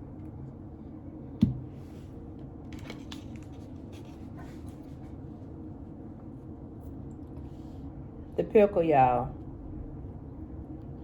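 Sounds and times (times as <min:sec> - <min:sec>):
soft thump: 0:01.4 - 0:01.7
food packaging clicks and rustles: 0:02.7 - 0:04.9.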